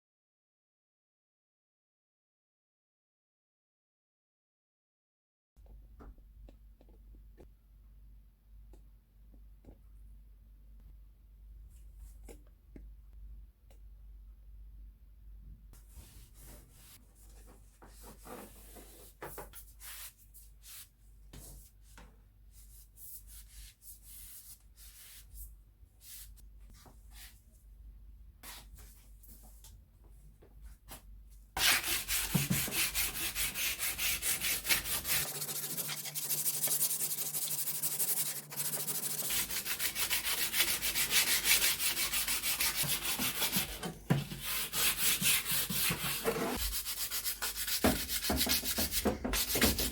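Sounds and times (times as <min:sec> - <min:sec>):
sanding wood: 0:31.6 - 0:43.8.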